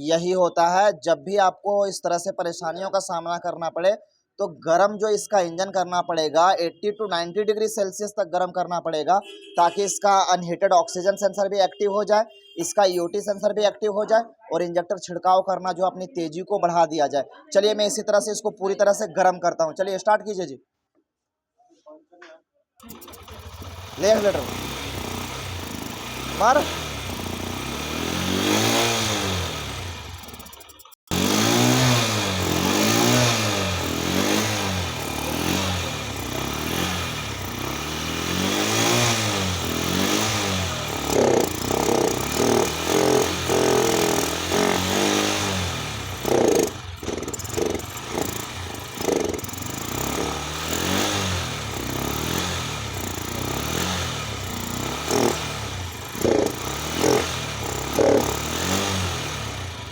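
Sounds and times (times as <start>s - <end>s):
motorcycle engine revving: 22.8s - 59.9s.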